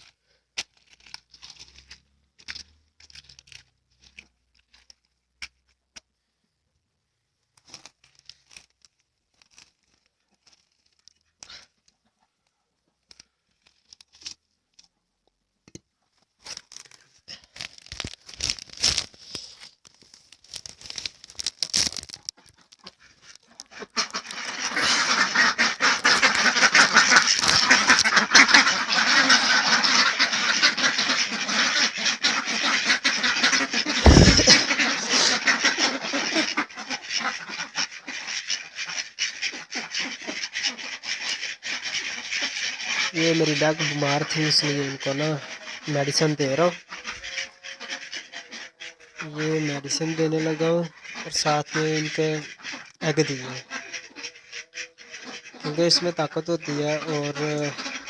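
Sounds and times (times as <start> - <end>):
duck bills clattering: 20.6 - 58.0
ducks quacking: 22.4 - 58.0.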